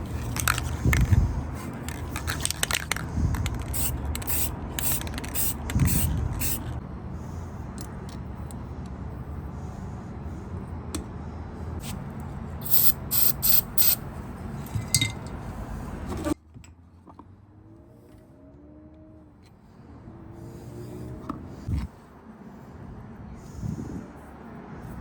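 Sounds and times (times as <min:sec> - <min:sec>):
short sharp sprays: 0:03.6 - 0:06.7, 0:12.6 - 0:14.0.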